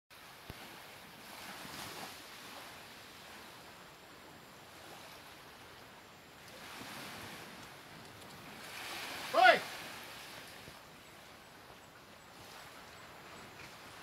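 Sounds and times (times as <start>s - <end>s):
ocean surf rushing: 6.5s - 10.9s.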